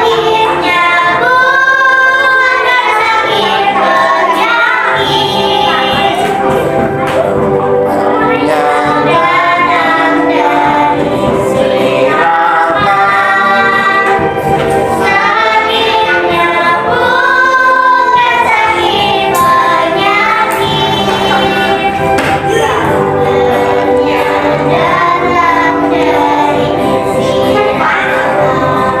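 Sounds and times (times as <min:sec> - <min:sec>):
choir singing: 0:00.0 - 0:29.0.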